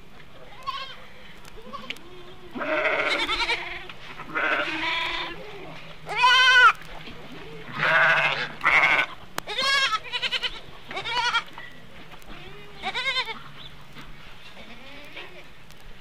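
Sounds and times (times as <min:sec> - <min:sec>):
sheep and goats bleating: 0:00.4 - 0:06.8, 0:07.4 - 0:11.5, 0:12.3 - 0:13.6, 0:14.5 - 0:15.5.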